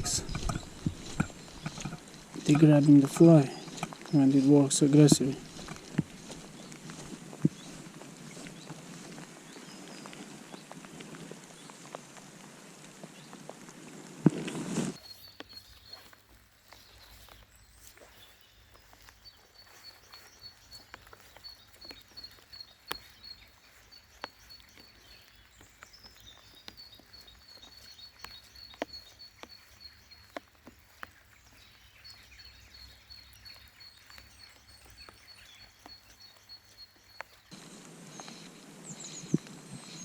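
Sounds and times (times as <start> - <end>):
small bird calling: 0.0 - 13.4, 14.9 - 40.0
outdoor background noise: 0.0 - 40.0.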